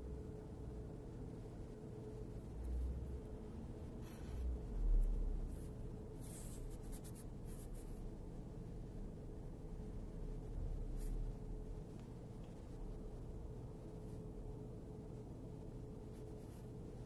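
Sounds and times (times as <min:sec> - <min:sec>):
air conditioner whine and hum: 0:00.0 - 0:17.0
scratchy rustling: 0:05.5 - 0:08.0.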